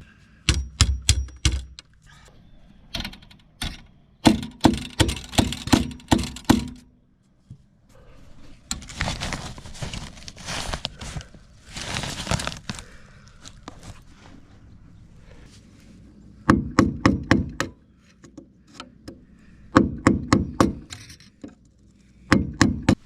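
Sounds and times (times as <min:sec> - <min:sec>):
sharp knocks: 0:00.5 - 0:01.8, 0:03.0 - 0:06.8, 0:22.3 - 0:23.0
crinkling rustling noise: 0:07.6 - 0:16.0.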